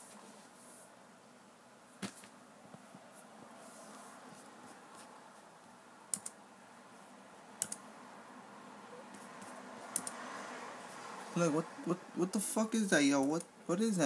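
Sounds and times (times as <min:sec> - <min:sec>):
computer mouse clicks: 0:06.1 - 0:06.4, 0:07.6 - 0:07.8, 0:09.1 - 0:10.2.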